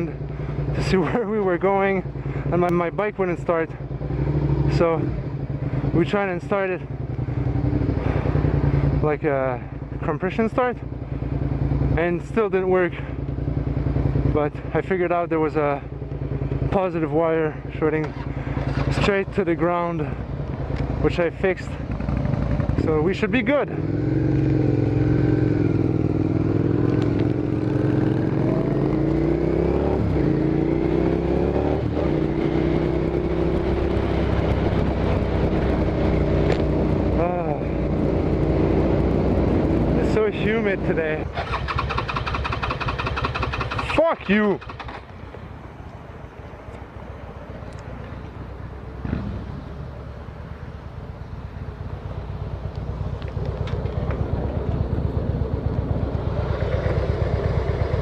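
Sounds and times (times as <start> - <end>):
motorcycle engine revving: 0.0 - 45.5, 49.0 - 49.9, 51.8 - 58.0
motorcycle engine pulsing: 21.8 - 45.4.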